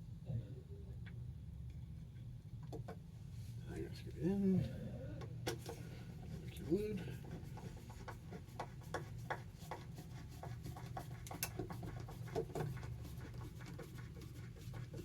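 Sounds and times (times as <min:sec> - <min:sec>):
faint low hum: 0:00.0 - 0:08.1.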